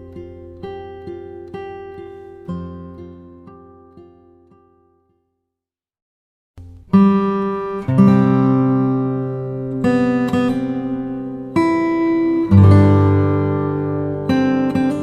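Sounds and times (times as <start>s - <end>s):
strummed acoustic guitar chords: 6.6s - 15.0s.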